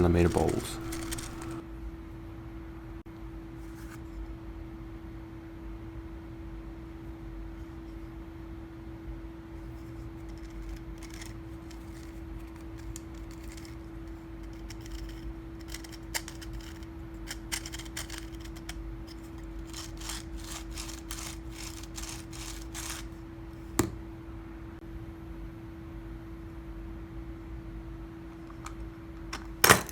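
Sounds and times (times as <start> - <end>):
steady hum: 0.0 - 1.6.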